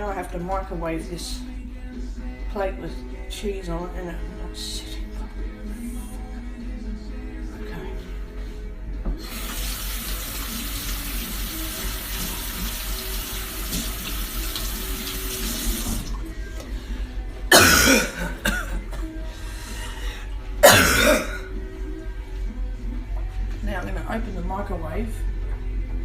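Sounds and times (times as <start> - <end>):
kitchen tap running: 9.2 - 16.3.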